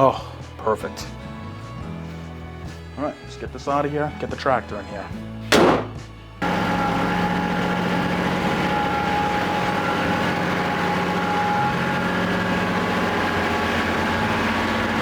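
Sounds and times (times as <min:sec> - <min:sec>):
vehicle engine running steadily: 0:05.2 - 0:15.0.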